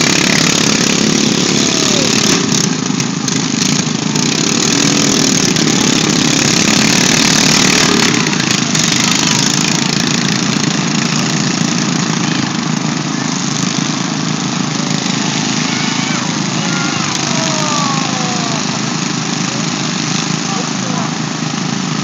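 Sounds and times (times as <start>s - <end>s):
lawn mower engines running: 0.0s - 22.0s.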